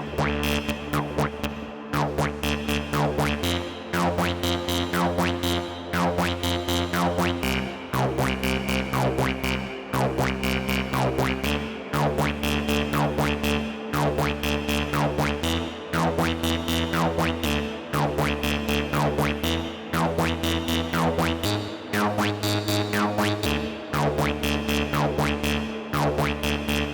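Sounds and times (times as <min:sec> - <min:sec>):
synth bass line: 0:00.0 - 0:26.9.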